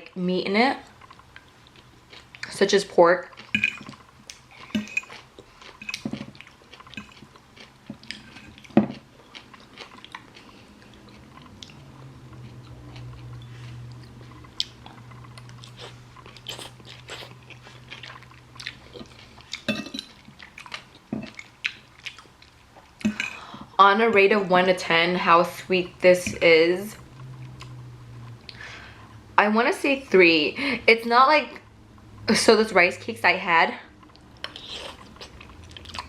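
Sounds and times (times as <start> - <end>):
low steady hum: 0.0 - 36.0
person chewing crunchy food: 0.8 - 2.5, 3.2 - 23.8, 34.0 - 36.0.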